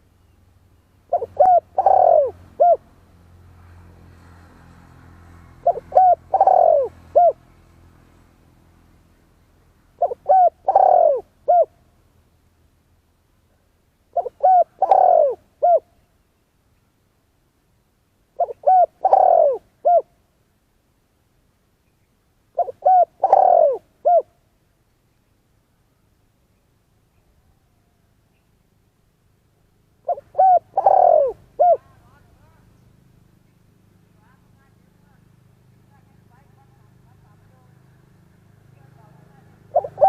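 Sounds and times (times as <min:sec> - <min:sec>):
dove cooing: 0:01.1 - 0:02.9, 0:05.6 - 0:07.4, 0:10.0 - 0:11.8, 0:14.1 - 0:16.0, 0:18.4 - 0:20.1, 0:22.6 - 0:24.4, 0:30.0 - 0:32.5, 0:38.9 - 0:40.0.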